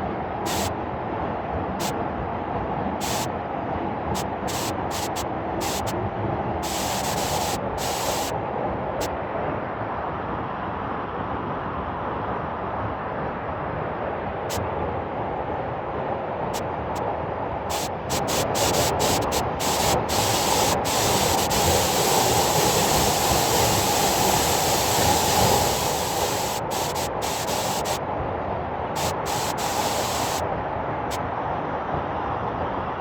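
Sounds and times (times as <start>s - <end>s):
hiss of spray: 0.5s - 0.7s, 3.0s - 3.3s, 4.2s - 6.0s, 6.6s - 8.4s, 17.7s - 28.0s, 29.0s - 30.4s
waterfall roaring: 0.5s - 0.7s, 4.5s - 5.9s, 17.7s - 28.0s, 29.0s - 30.4s.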